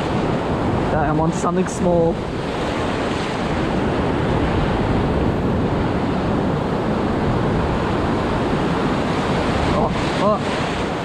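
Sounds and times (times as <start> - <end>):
surf washing: 0.0 - 11.0
wind buffeting microphone: 0.0 - 11.0.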